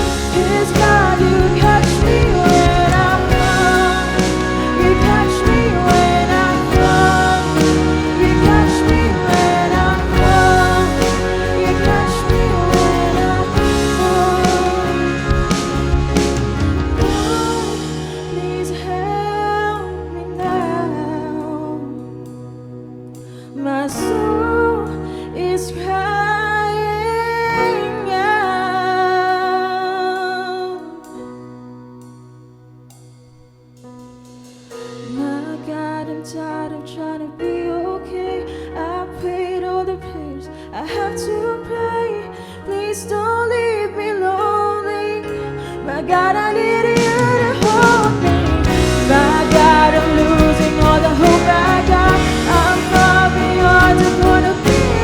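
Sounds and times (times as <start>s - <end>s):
sustained chords accompaniment: 0.0s - 23.2s, 45.4s - 55.0s
worship song with band: 0.0s - 55.0s.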